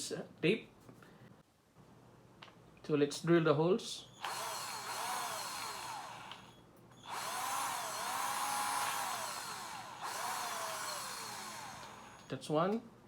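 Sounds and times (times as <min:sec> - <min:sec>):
power drill boring into plastic: 0:04.2 - 0:12.4.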